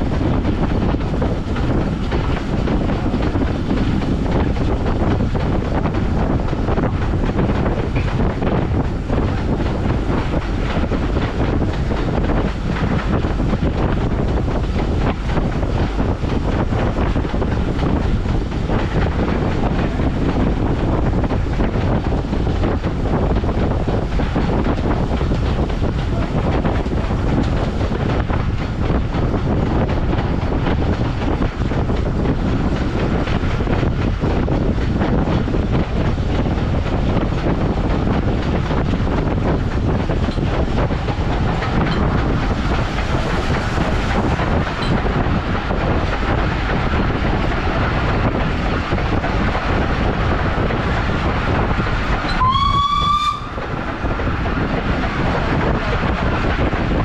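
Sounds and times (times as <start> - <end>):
train rumbling and rattling: 0.0 - 57.0
train whistle blast: 52.3 - 53.6.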